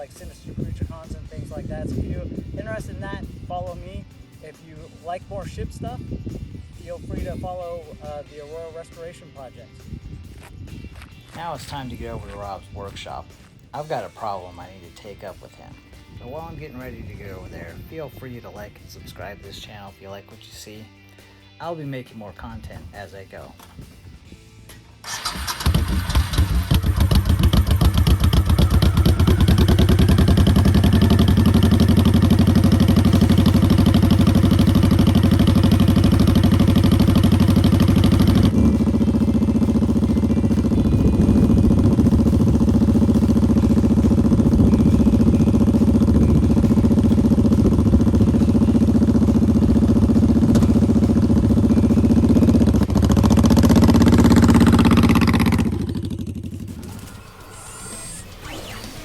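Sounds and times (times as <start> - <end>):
motorcycle engine running: 25.0 - 57.2.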